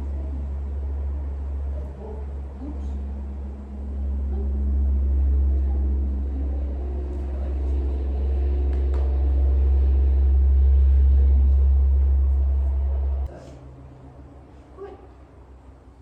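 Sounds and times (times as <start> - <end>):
loud low rumble: 0.0 - 16.0.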